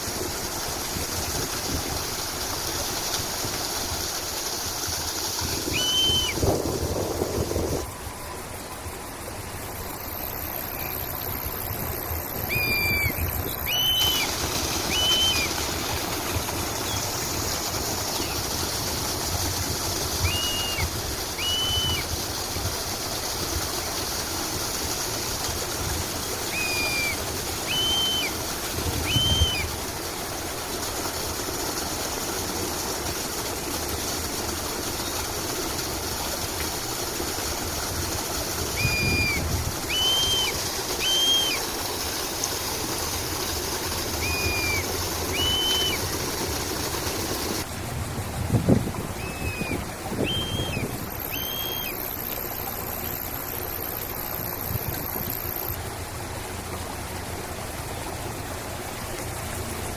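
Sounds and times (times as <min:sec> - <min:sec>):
stream flowing: 0:00.0 - 0:59.9
bird call notes: 0:05.7 - 0:06.4, 0:10.0 - 0:16.0, 0:20.2 - 0:22.2, 0:26.4 - 0:28.4, 0:29.0 - 0:29.7, 0:38.7 - 0:41.7, 0:44.1 - 0:46.1, 0:49.2 - 0:55.8.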